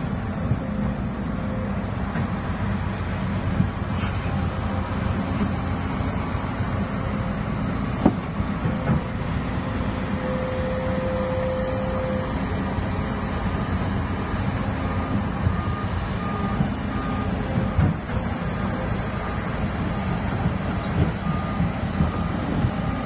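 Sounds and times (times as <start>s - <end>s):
bulldozer diesel engine running: 0.0s - 23.0s
reversing alarm beeping: 8.7s - 23.0s.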